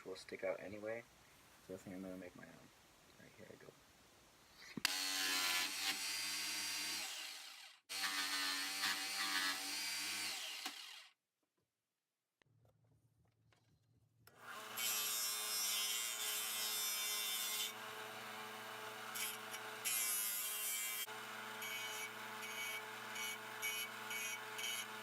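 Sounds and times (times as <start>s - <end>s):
small power tool motor: 4.9s - 11.2s, 14.3s - 25.0s.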